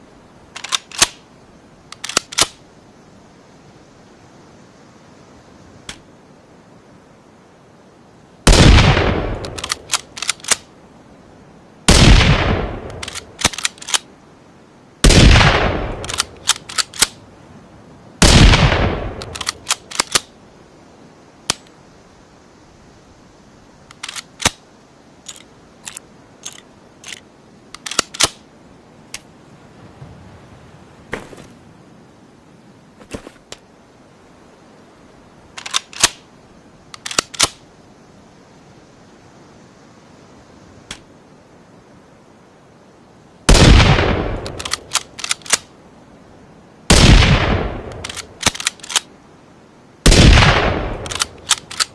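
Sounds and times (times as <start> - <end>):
sharp clicks: 1.9 - 2.6, 9.3 - 10.7, 12.8 - 14.1, 15.9 - 17.2, 19.1 - 20.3, 23.9 - 24.6, 25.3 - 28.4, 35.6 - 36.2, 36.9 - 37.6, 44.4 - 45.7, 47.8 - 49.1, 50.8 - 51.9
rifle shots with ringing tail: 46.9 - 48.0, 50.1 - 51.2.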